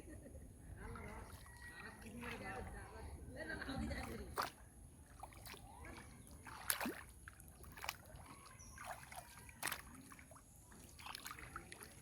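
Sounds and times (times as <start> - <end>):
water trickles and plops: 0.7 - 12.0
water splashing and dripping: 0.8 - 3.0, 3.9 - 12.0
sharp splashes: 4.0 - 12.0.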